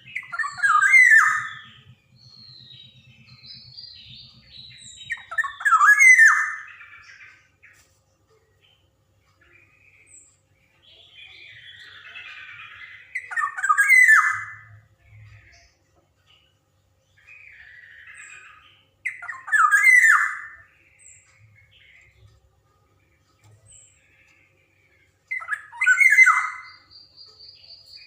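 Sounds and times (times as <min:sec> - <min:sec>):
bird harsh squawking: 0:00.0 - 0:01.8, 0:17.9 - 0:20.6, 0:25.3 - 0:26.9
bird raspy chatter: 0:00.0 - 0:28.0.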